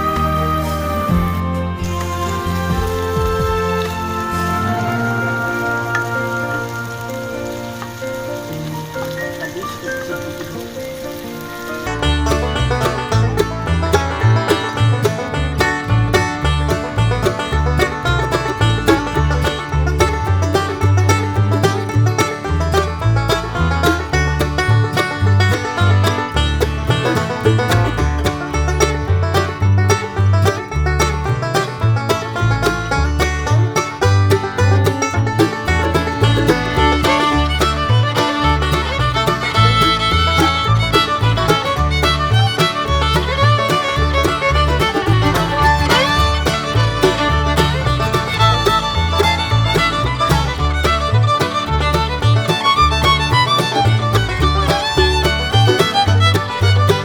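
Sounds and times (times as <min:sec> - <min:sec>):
upbeat bluegrass music: 0:00.0 - 0:57.0.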